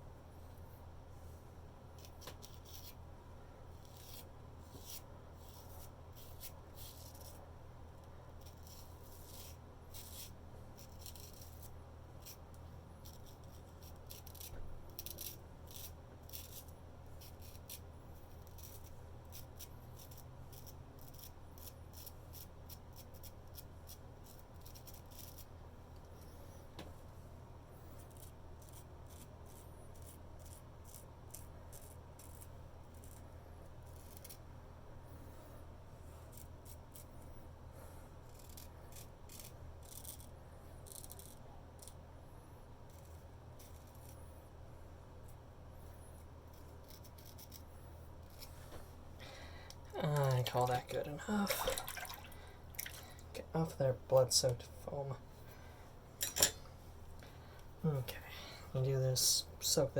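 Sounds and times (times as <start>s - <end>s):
steady low hum: 0.0s - 59.9s
razor scraping stubble: 2.0s - 3.0s, 3.8s - 7.4s, 8.0s - 26.4s, 27.8s - 34.4s, 38.2s - 42.0s, 42.9s - 44.3s, 46.1s - 48.9s.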